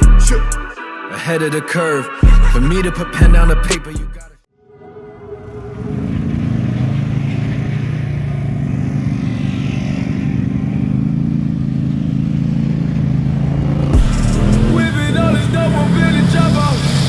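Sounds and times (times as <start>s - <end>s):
vehicle engine running: 5.5s - 17.0s.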